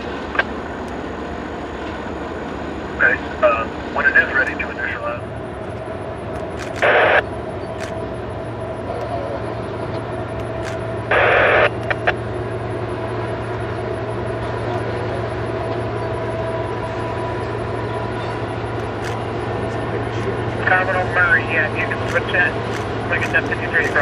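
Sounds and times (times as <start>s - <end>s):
steady low hum: 2.7s - 14.1s, 16.0s - 24.0s
radio static burst: 4.0s - 5.2s, 6.4s - 8.2s, 10.6s - 12.1s, 18.8s - 24.0s
radio squelch clicks: 4.2s - 4.7s, 5.6s - 9.1s, 10.4s - 12.2s, 18.8s - 24.0s.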